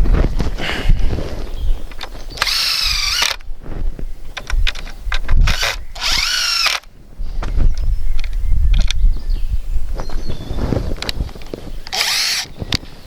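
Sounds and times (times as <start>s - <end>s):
cordless drill whining: 2.4s - 3.4s, 5.4s - 6.8s, 11.9s - 12.6s
handling knocks and clicks: 4.3s - 5.8s.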